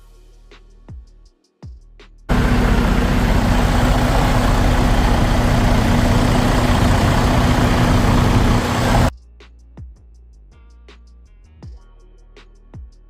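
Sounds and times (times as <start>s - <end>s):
diesel truck engine idling: 2.3s - 9.1s
loud hiss: 2.3s - 9.1s.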